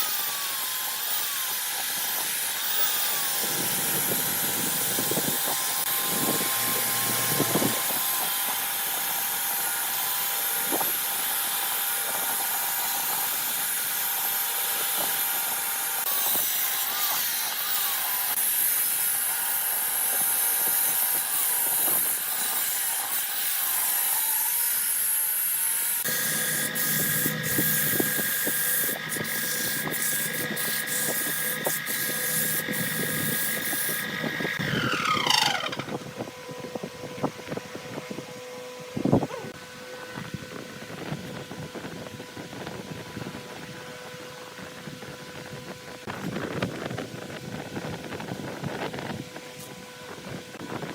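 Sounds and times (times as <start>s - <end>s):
turning tool cutting wood: 0.0s - 36.8s
wood lathe motor whine: 0.0s - 50.9s.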